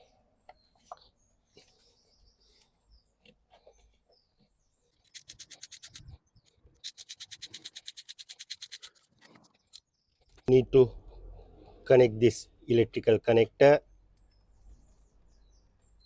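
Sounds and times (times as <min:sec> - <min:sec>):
hand ratchet clicking: 0:06.8 - 0:09.0.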